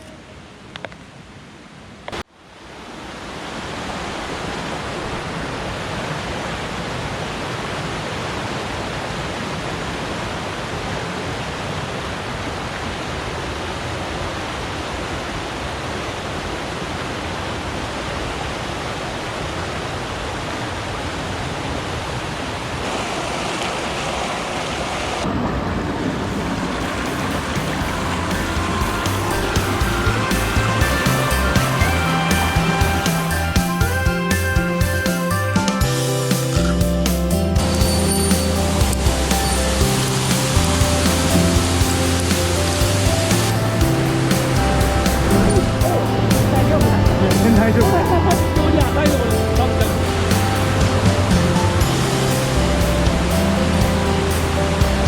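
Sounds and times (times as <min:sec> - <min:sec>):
stream water rushing: 0:00.0 - 0:55.0
music: 0:26.8 - 0:55.0.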